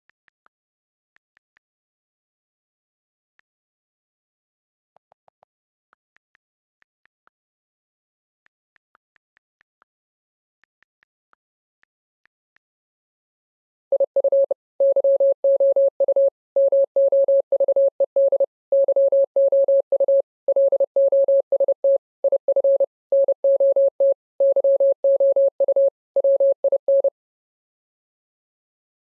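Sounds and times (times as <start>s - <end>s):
morse code beeps: 13.9s - 27.1s.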